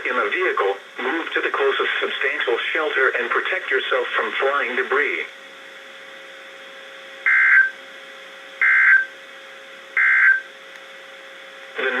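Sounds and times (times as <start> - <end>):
radio hiss: 0.0 - 5.4, 11.8 - 12.0.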